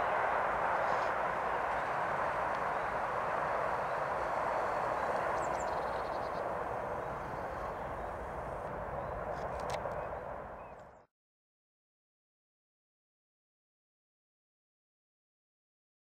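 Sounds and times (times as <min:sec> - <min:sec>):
distant motorway traffic roar: 0:00.0 - 0:11.1
faint bird chirps: 0:04.8 - 0:06.5.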